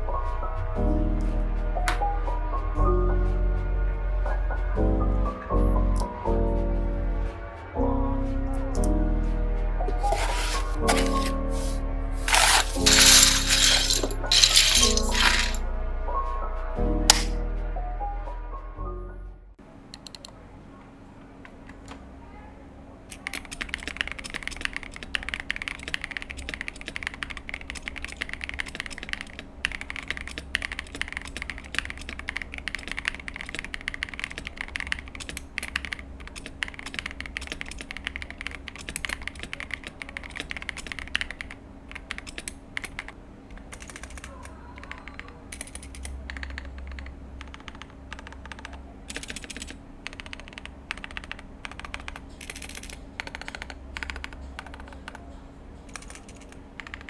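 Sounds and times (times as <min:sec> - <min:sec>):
mechanical keyboard key clicks: 0:17.1 - 0:17.3, 0:23.1 - 0:55.2, 0:55.9 - 0:57.0
long keys pressed on keyboard: 0:23.1 - 0:57.0.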